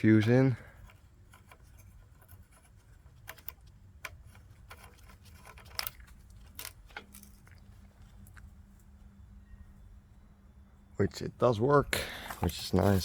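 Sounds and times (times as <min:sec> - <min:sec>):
fuse clicking and rattling: 0:00.0 - 0:08.5.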